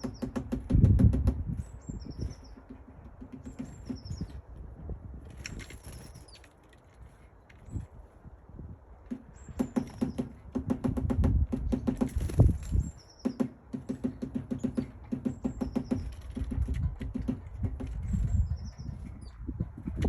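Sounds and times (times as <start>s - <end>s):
woodpecker pecking at wood: 0.0s - 4.7s, 9.0s - 19.4s.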